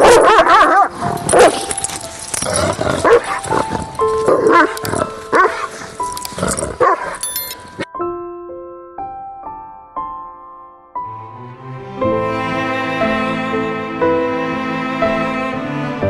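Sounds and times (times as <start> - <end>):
dog barking: 0.0 - 1.9, 3.0 - 3.6, 4.3 - 5.7, 6.8 - 7.2
soft piano music: 0.0 - 16.0.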